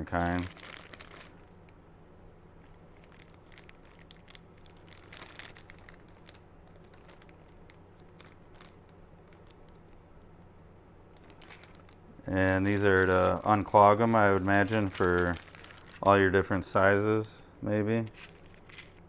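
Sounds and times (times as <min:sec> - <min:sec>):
plastic packaging crinkling: 0:00.0 - 0:01.8, 0:02.6 - 0:10.0, 0:11.1 - 0:17.0, 0:18.1 - 0:19.0
faint steady hum: 0:00.0 - 0:19.0.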